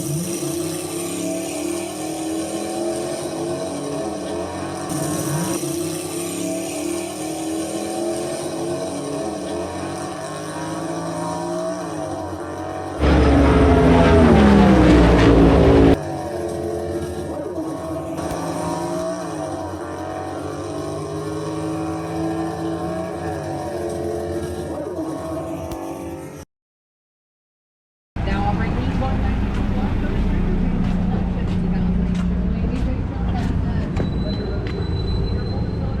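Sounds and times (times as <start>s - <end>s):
loud engine sound: 0.0s - 25.8s
car engines revving: 0.0s - 26.4s.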